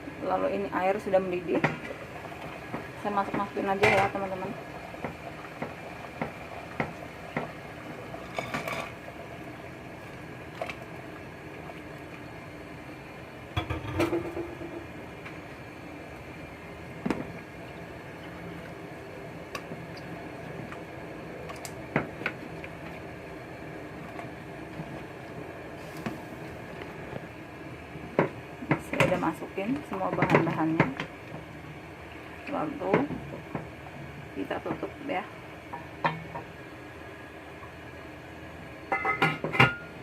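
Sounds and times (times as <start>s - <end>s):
water boiling: 0.0s - 40.0s
utensils clinking against pot: 38.9s - 39.9s.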